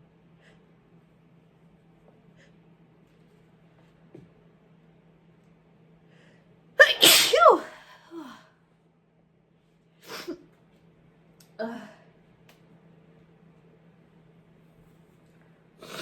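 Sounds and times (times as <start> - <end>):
person sneezing: 6.8 - 8.4.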